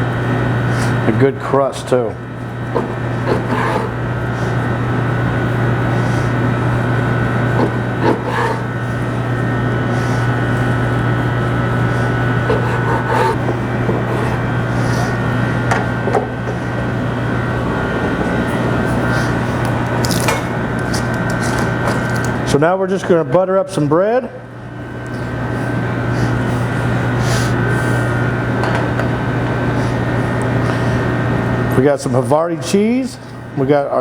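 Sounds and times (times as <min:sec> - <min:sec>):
knife sawing through meat: 0:02.8 - 0:04.9, 0:05.7 - 0:10.9, 0:11.6 - 0:13.4, 0:14.0 - 0:15.3, 0:25.2 - 0:28.2.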